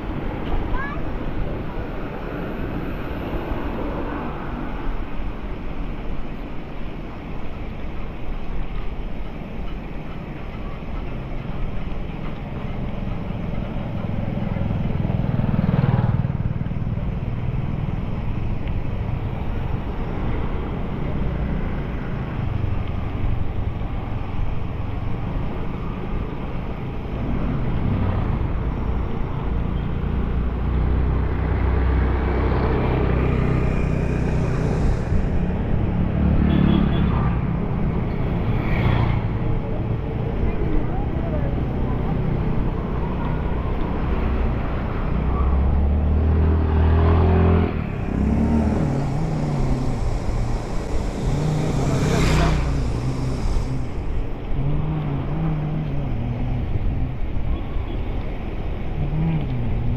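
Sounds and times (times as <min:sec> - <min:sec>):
wind buffeting microphone: 0:31.4 - 0:36.3, 0:47.4 - 0:59.9.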